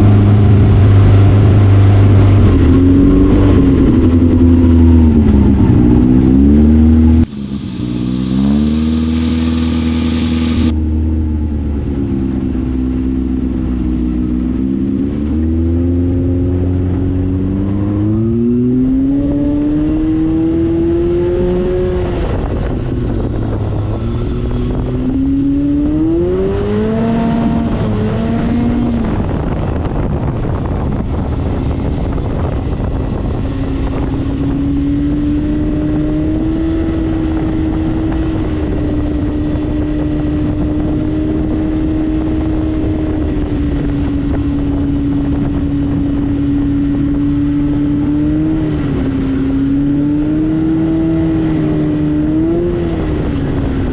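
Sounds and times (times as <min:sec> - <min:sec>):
off-road vehicle engine revving: 0:06.9 - 0:10.7.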